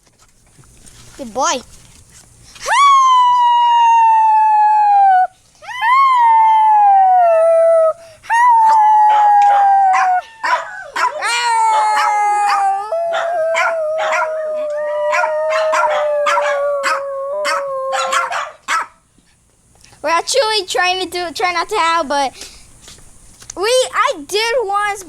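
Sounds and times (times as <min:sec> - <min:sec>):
dogs howling: 0:02.7 - 0:18.9
dogs yipping and barking: 0:08.6 - 0:19.0.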